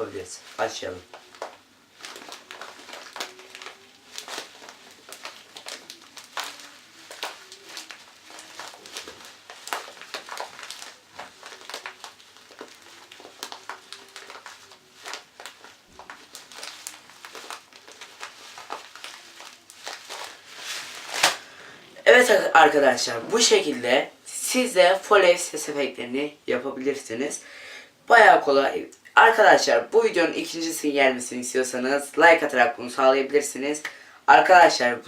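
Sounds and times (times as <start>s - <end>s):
plastic packet crackling: 0.0s - 27.3s.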